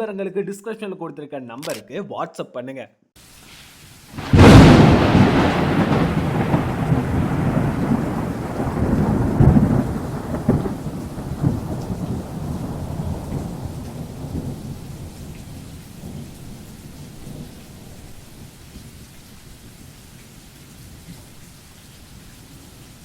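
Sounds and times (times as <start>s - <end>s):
steady rain: 3.2s - 23.0s
rolling thunder: 4.2s - 18.5s.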